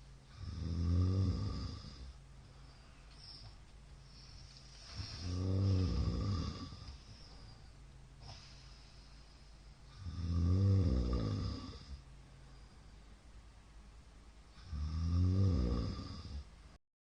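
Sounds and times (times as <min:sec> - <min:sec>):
quiet breathing: 0:00.0 - 0:13.4, 0:14.4 - 0:16.8
man snoring loudly: 0:00.3 - 0:02.1, 0:05.2 - 0:06.9, 0:10.0 - 0:12.0, 0:14.6 - 0:16.5.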